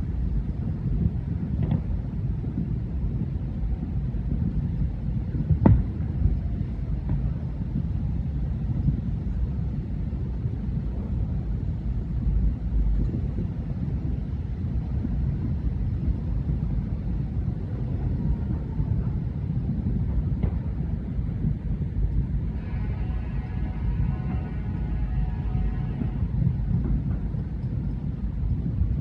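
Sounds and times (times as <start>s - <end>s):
distant fireworks rumble: 0.0s - 29.0s
faint firework pops: 5.5s - 6.4s, 7.0s - 7.3s, 20.1s - 20.8s.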